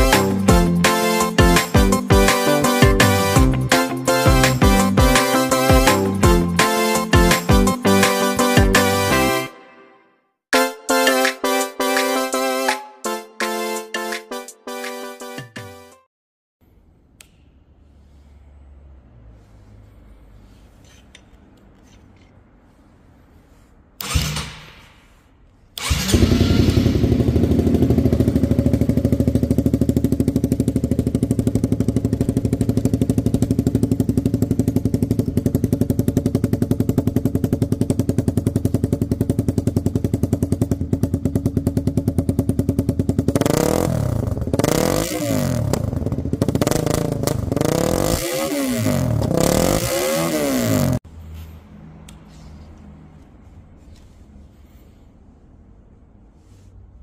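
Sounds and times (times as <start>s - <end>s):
motorcycle engine starting and idling: 24.0s - 54.6s
motorcycle engine revving: 25.8s - 51.0s.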